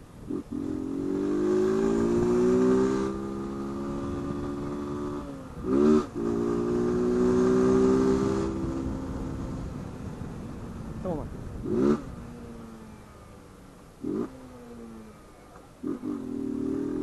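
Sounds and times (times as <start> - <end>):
motorcycle engine accelerating: 0.0 - 17.0
short loud engine rev: 0.3 - 9.4, 15.8 - 17.0.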